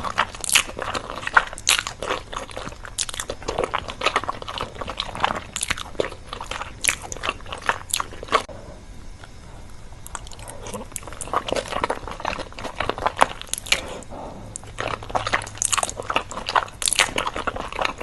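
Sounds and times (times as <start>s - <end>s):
biting and chewing crunches: 0.0s - 18.0s.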